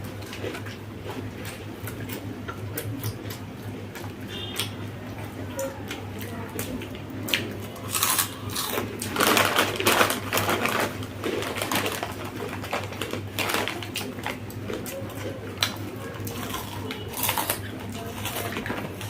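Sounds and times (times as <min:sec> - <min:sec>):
crunchy snacks being eaten: 0:05.9 - 0:19.0
snack packet crackling: 0:07.4 - 0:19.0.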